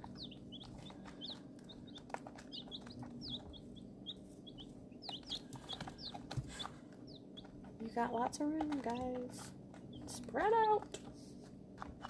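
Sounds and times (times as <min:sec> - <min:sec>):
baby chicks peeping: 0:00.0 - 0:12.0.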